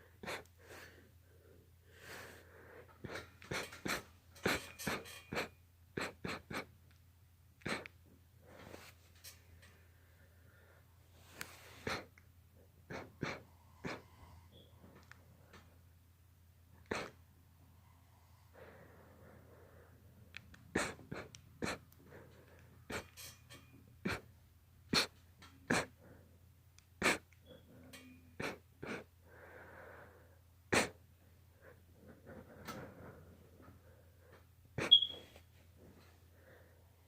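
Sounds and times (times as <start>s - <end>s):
breathing: 0.6s - 3.1s, 9.6s - 12.1s, 13.3s - 15.8s, 17.6s - 20.2s, 29.2s - 30.4s, 31.5s - 34.5s, 35.8s - 37.0s.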